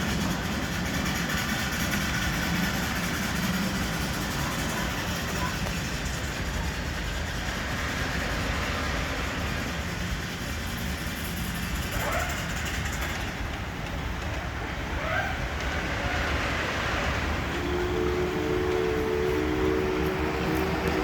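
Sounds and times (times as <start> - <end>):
miniature train rumbling: 0.0 - 21.0.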